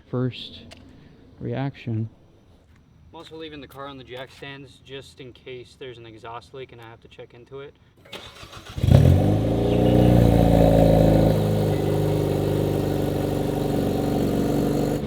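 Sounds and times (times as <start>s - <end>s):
car engine starting and idling: 8.1s - 15.0s.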